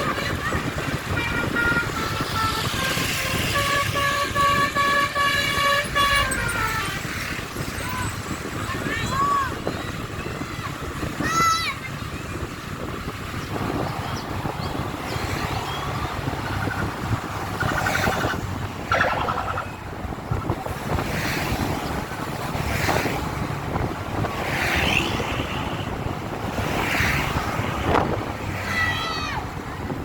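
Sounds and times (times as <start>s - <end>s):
motor vehicle rumble: 0.0s - 30.0s
wind on microphone: 0.0s - 30.0s
short higher-pitched sounds: 18.9s - 19.9s.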